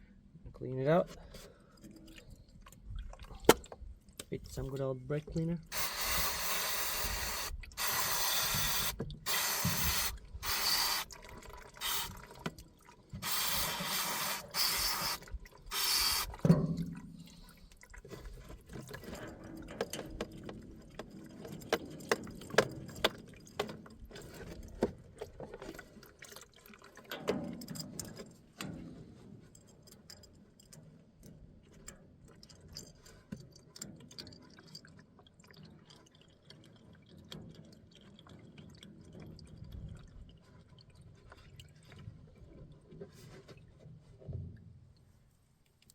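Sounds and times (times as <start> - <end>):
liquid dripping: 1.3 - 24.7, 32.2 - 42.8
aerosol spray hissing: 5.7 - 11.1, 13.2 - 16.3.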